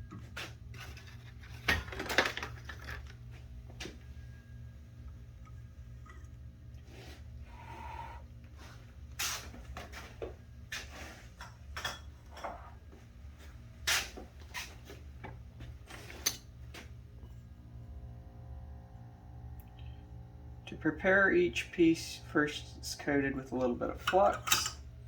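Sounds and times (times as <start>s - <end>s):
low hum: 15.2s - 25.0s.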